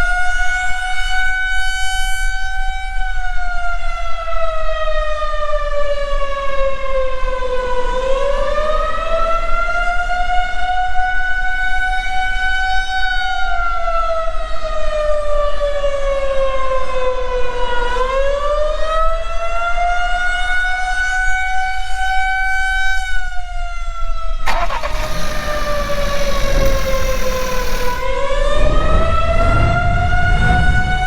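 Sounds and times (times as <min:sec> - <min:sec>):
hiss: 0:24.5 - 0:28.1
sharp click: 0:24.5 - 0:28.1
low rumble: 0:29.2 - 0:31.0.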